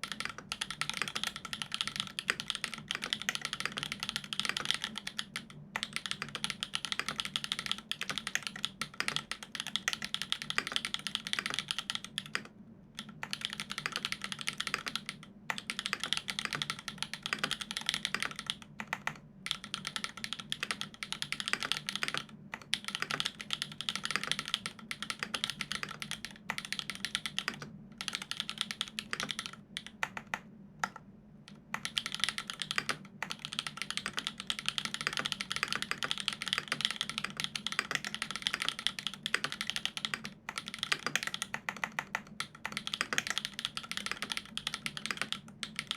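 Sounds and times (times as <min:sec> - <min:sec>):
fast mechanical keyboard typing: 0:00.0 - 0:45.9.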